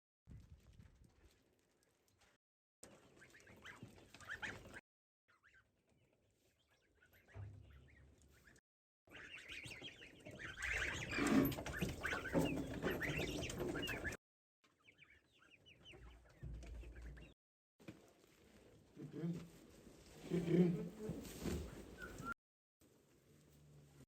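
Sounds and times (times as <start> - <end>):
chickens clucking: 9.2 - 14.2.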